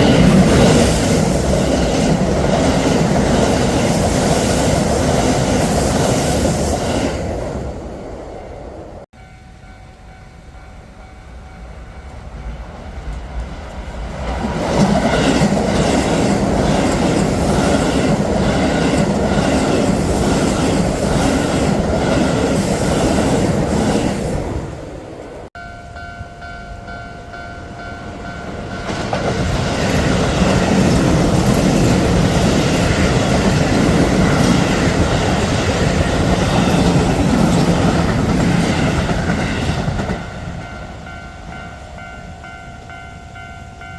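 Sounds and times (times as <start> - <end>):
train passing: 0.0 - 43.9
level crossing warning bell: 9.2 - 12.8, 25.6 - 35.2, 36.4 - 43.9.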